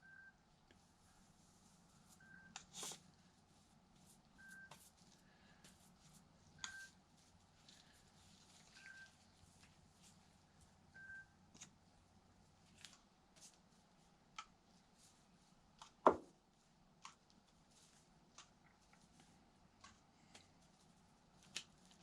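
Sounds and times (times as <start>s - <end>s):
sharp knock on workbench: 16.1s - 16.3s.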